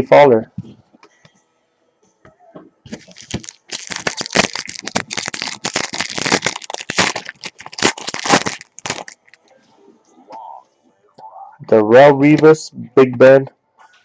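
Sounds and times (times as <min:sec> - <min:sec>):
foil wrapper crinkling: 0:02.9 - 0:09.4.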